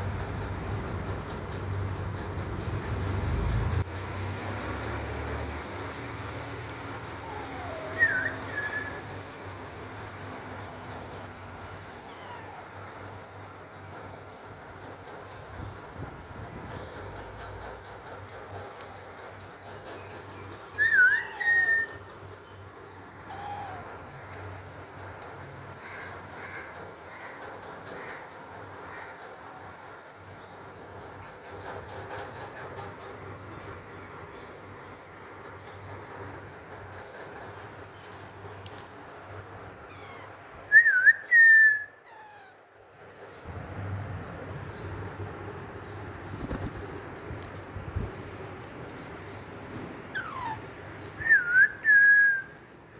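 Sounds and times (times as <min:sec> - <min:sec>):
parakeet whistling: 0:07.3 - 0:09.1, 0:20.8 - 0:22.0, 0:50.1 - 0:50.6.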